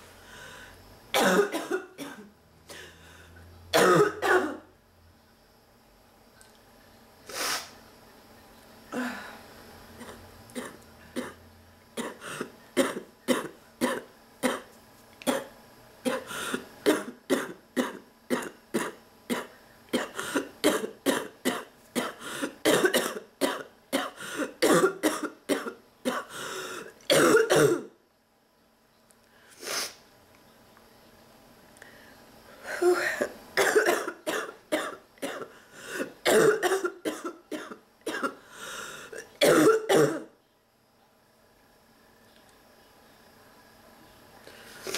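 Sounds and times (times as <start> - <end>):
woman barking cough: 1.2 - 2.3, 3.8 - 4.6, 16.9 - 26.3, 27.1 - 27.9, 33.6 - 35.5, 36.3 - 38.4, 39.4 - 40.3.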